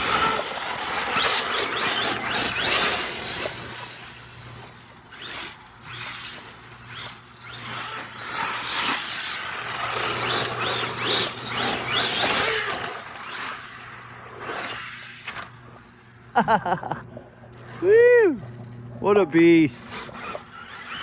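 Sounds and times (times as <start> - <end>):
electric motor whining: 0.0 - 16.2, 17.5 - 21.0
tyre and ground noise: 0.0 - 21.0.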